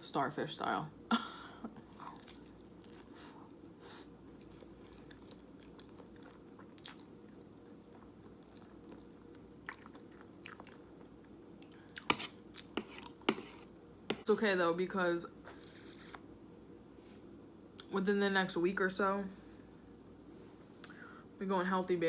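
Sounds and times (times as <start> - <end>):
low steady hum: 0.0 - 22.0
chewing noodles: 4.4 - 10.8.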